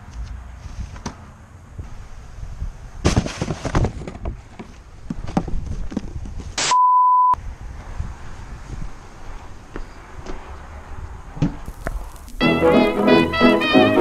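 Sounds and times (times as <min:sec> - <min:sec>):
censor bleep tone: 0:06.7 - 0:07.4.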